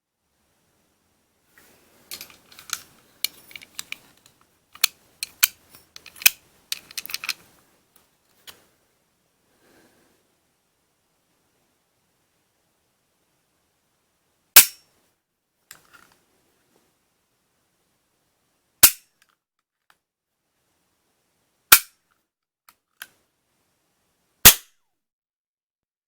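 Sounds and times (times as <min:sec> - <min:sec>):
cap gun cracks: 0:14.6 - 0:14.8, 0:18.8 - 0:19.1, 0:21.7 - 0:21.9, 0:24.4 - 0:24.7.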